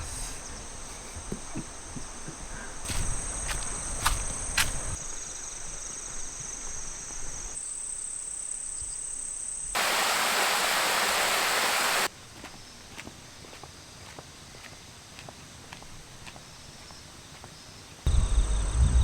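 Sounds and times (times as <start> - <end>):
high-pitched insect song: 2.9 - 12.1, 18.1 - 19.0.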